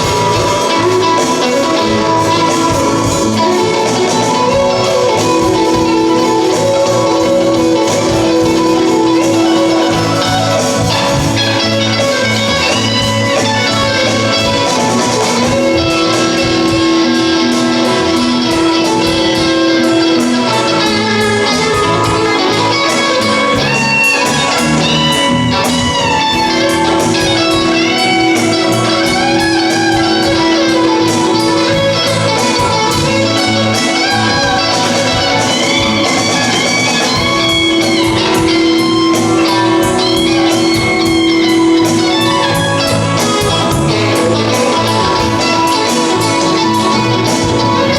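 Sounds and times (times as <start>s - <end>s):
rock band playing live: 0.0s - 47.9s.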